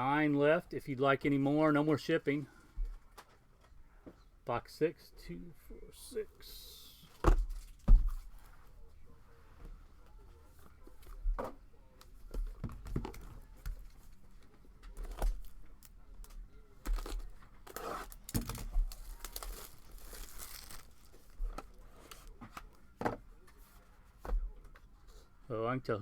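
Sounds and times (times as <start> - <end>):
plastic wrapping tearing and crinkling: 15.0 - 22.3.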